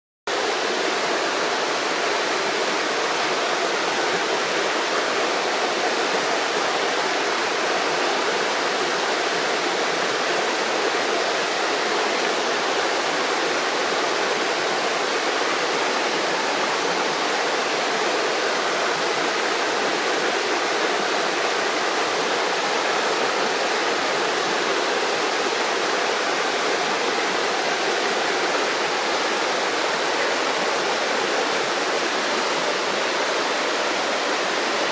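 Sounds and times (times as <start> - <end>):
river water rushing over stones: 0.3 - 34.9.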